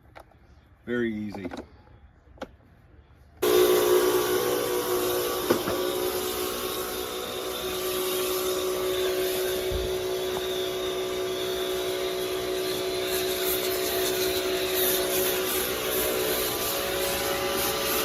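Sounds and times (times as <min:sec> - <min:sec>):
pressure washer motor humming: 0:03.4 - 0:18.0
spray hiss: 0:03.4 - 0:18.0.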